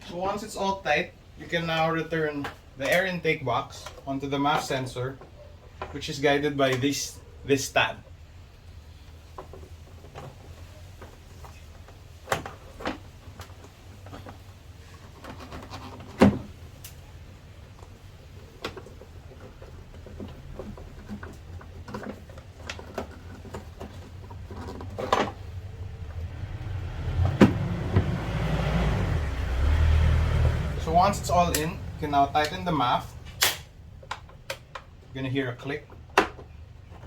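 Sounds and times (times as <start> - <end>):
rumbling rustling handling noise: 0.0 - 37.0
hard plastic knocks and clicks: 35.9 - 37.0.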